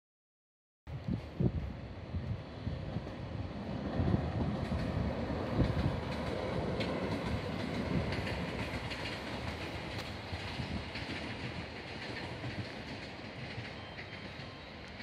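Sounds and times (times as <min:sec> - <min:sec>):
train wheels rumbling on track: 0:01.0 - 0:15.0.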